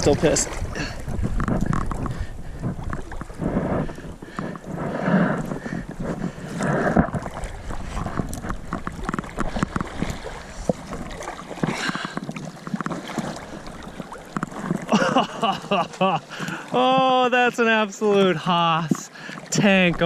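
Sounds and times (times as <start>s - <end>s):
water splashing and sloshing: 0.0s - 20.0s
fish thrashing in a net: 6.8s - 16.8s.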